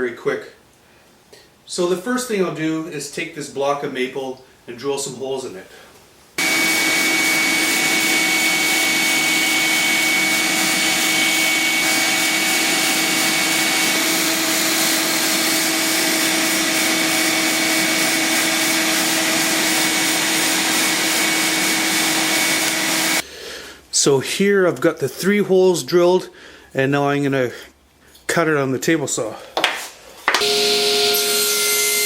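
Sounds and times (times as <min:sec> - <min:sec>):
power tool motor whine: 0:06.4 - 0:23.2, 0:30.4 - 0:32.0.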